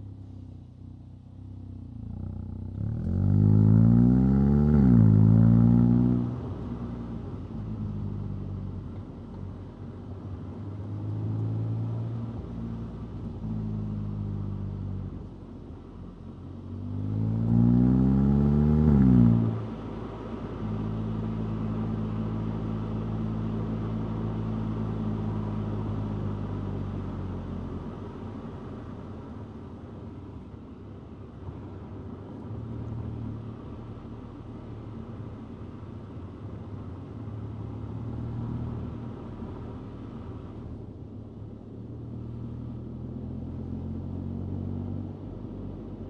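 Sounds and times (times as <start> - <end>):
car engine revving: 16.8 - 19.7.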